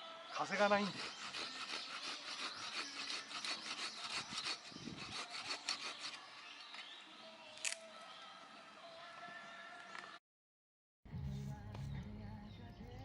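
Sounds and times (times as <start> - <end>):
rasping scraping strokes: 0.4 - 7.0.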